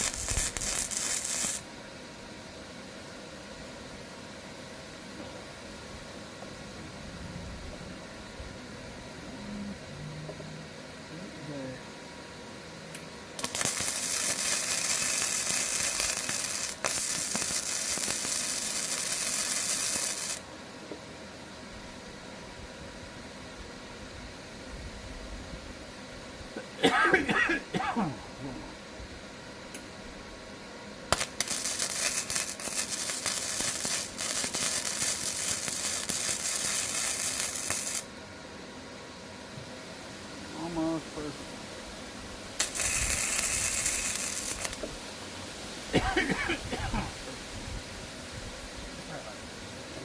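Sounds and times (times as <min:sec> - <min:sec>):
welding arc crackling and hissing: 0:00.0 - 0:01.7, 0:12.9 - 0:20.5, 0:31.1 - 0:38.2, 0:42.5 - 0:45.1.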